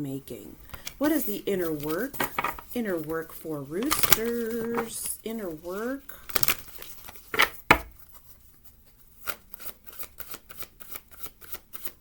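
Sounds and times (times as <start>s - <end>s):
cards shuffling with soft clicks: 0.6s - 2.7s, 3.8s - 5.2s, 6.2s - 8.2s
cards tapping and slapping: 1.7s - 2.7s, 3.8s - 5.1s, 6.3s - 8.0s.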